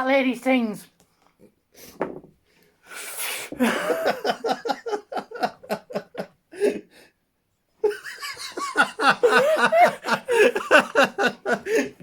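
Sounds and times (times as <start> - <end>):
person laughing hard: 3.6 - 6.8, 7.8 - 12.0.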